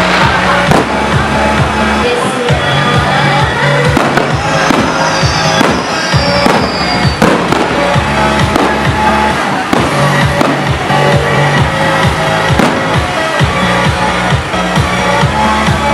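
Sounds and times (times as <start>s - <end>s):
fireworks bangs: 0.0s - 15.8s
music with pounding beat: 0.0s - 15.9s
falling firework whistle: 4.0s - 10.6s.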